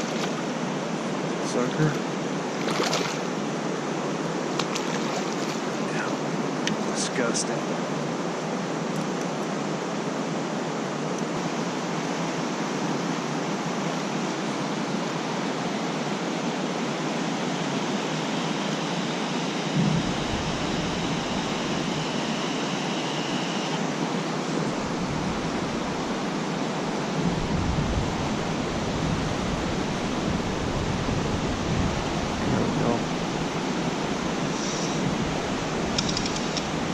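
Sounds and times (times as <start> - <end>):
creek rushing: 0.0 - 36.9
low rumble: 19.8 - 21.6.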